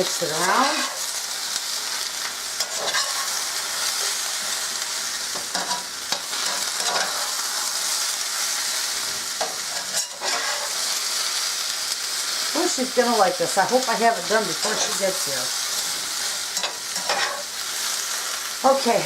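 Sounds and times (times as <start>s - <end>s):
utensil scraping skillet: 0.0s - 11.5s, 13.9s - 18.5s
food sizzling in oil in a skillet: 0.0s - 19.0s.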